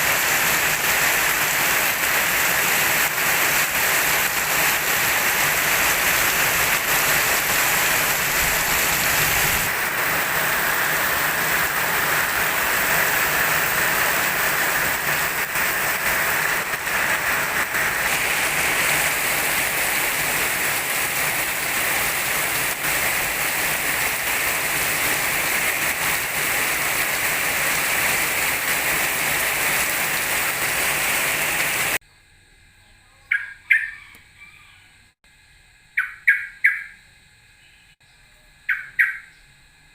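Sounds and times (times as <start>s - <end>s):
heavy rain falling: 0.0s - 32.0s
bird squawking: 33.2s - 34.9s, 36.0s - 37.0s, 38.7s - 39.4s.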